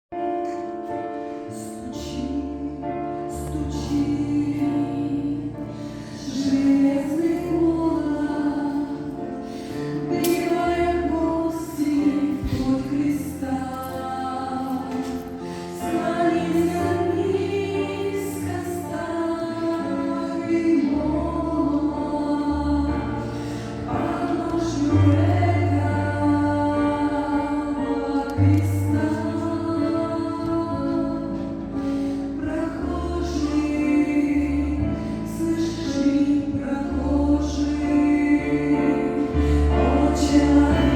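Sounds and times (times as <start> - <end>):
choir singing: 6.2 - 31.6, 32.4 - 40.9
low held bass notes: 16.0 - 40.9.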